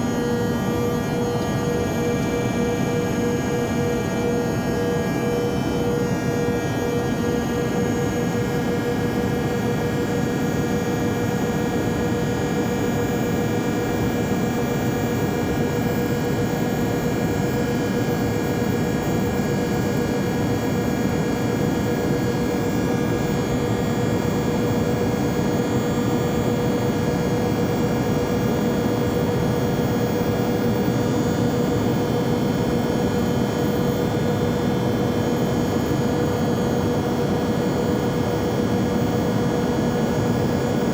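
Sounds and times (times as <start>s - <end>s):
jet airplane drone: 0.0s - 14.1s.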